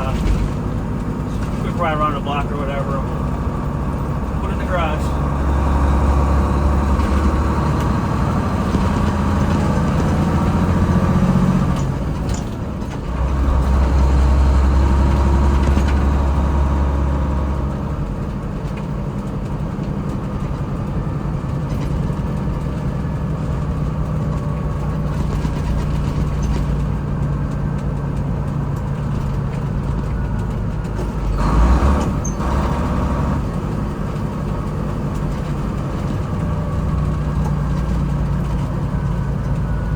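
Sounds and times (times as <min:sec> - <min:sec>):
truck diesel engine under load: 0:00.0 - 0:39.9.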